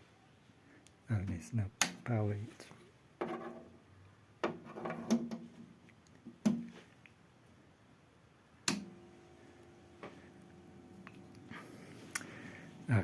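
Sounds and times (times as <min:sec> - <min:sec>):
projector low hum: 0:08.4 - 0:13.0
switch clicks: 0:08.6 - 0:08.9.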